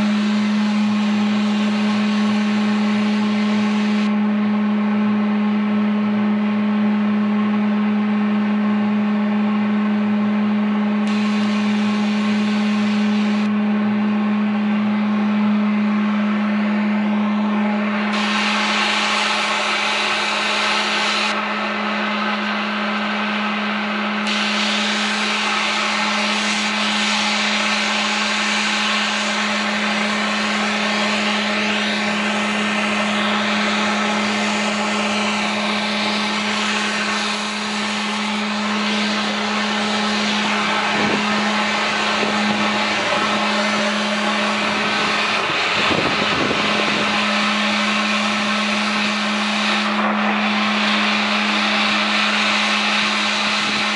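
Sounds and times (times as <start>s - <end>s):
boiler burner and blower din: 0.0s - 53.9s
strong hum: 0.0s - 53.9s.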